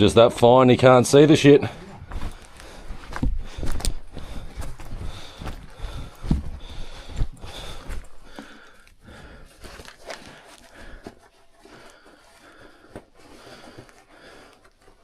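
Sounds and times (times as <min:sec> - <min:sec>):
person breathing: 0:01.6 - 0:15.0
scuffing footsteps on rock: 0:02.1 - 0:08.5.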